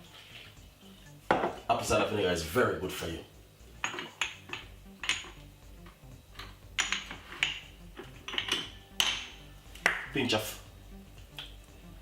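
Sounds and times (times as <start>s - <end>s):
kitchen utensils clinking: 3.8s - 5.5s, 6.3s - 9.4s.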